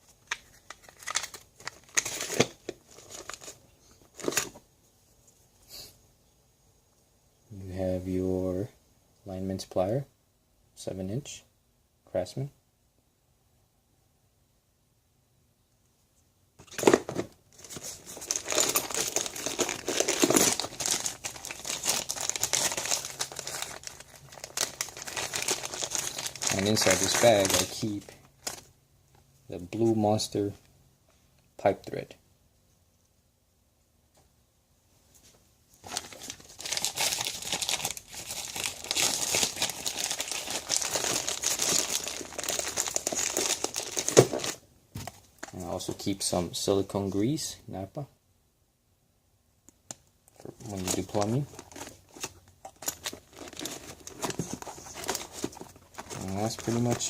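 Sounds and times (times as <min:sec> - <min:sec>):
rustling of bag contents: 0:00.2 - 0:04.6, 0:16.6 - 0:28.7, 0:35.8 - 0:45.6, 0:50.3 - 0:57.0.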